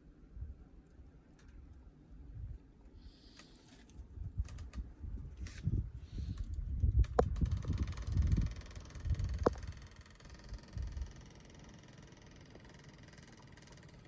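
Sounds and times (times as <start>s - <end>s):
wind buffeting microphone: 4.0s - 11.2s
sharp clicks: 6.4s - 14.0s.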